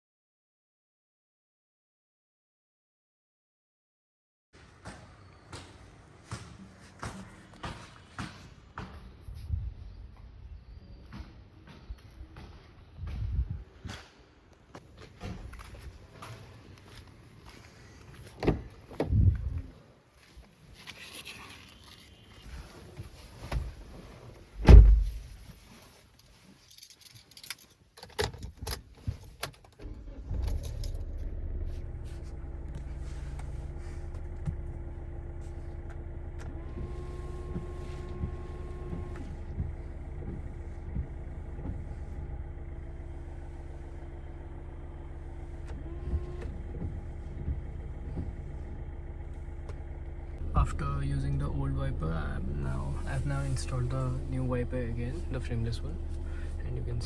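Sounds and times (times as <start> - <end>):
car door shutting: 18.2 - 19.6, 21.6 - 25.4, 35.8 - 49.9
car engine starting and idling: 21.1 - 25.6, 28.6 - 57.0
keys jingling: 26.1 - 29.4.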